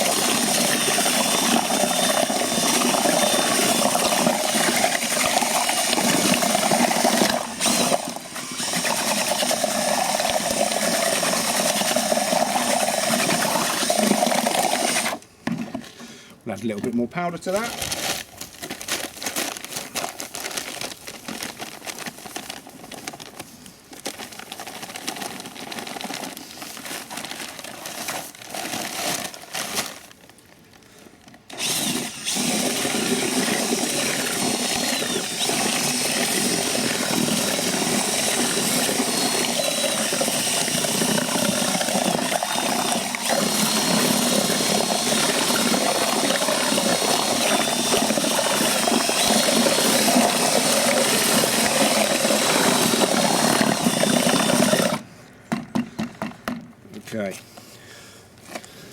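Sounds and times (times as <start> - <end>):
electric drill mixing: 0.0 - 15.2, 31.5 - 55.0
powder rustling into bucket: 15.6 - 30.5.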